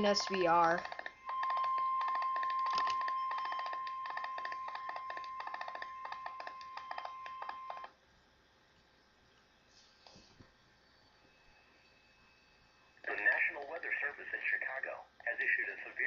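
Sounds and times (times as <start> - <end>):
steady high alarm beep: 0.0 - 7.9.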